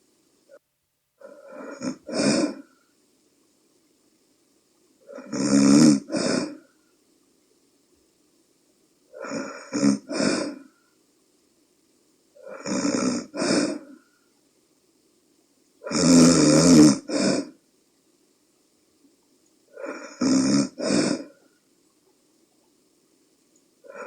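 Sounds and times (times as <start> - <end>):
woman snoring: 1.2 - 2.8, 5.0 - 6.7, 9.1 - 10.7, 12.4 - 14.0, 15.8 - 17.6, 19.7 - 21.4.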